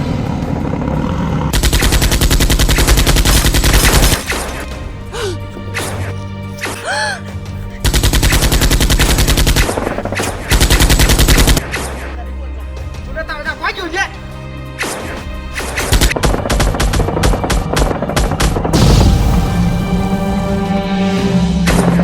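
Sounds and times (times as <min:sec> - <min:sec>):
background music: 0:00.0 - 0:22.0
automatic gunfire: 0:01.6 - 0:04.8, 0:07.8 - 0:12.0.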